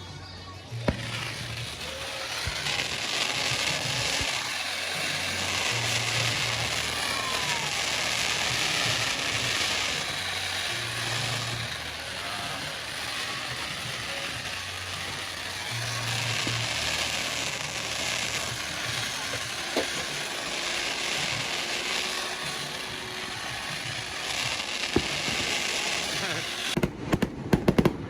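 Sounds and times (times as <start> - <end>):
fireworks popping and banging: 0.0 - 28.0.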